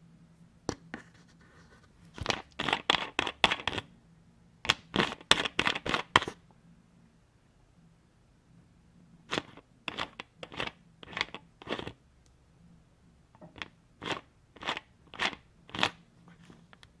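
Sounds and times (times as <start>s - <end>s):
bottle screw cap twisting: 13.5s - 16.0s.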